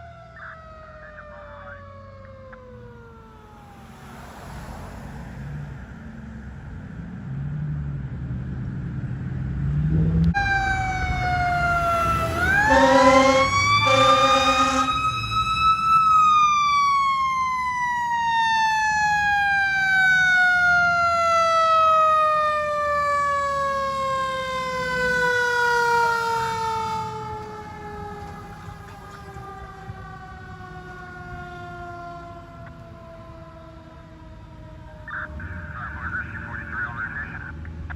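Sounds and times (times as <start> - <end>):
mechanical siren wailing: 0.0 - 3.9, 10.2 - 35.6
truck engine rumble: 0.0 - 37.9
air horn blasts: 12.5 - 15.2.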